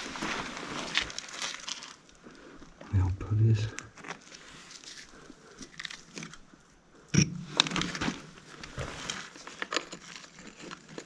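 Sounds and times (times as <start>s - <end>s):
debris crunching and crackling: 0.0s - 3.1s, 7.4s - 11.0s.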